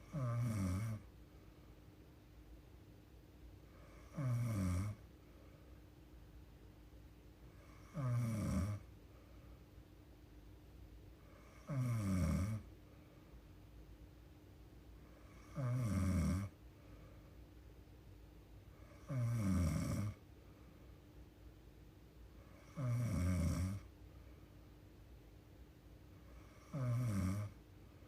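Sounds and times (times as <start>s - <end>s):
woman snoring: 0.0s - 1.0s, 3.8s - 5.0s, 7.6s - 8.9s, 11.3s - 12.7s, 15.2s - 16.6s, 18.8s - 20.2s, 22.5s - 23.9s, 26.3s - 27.6s.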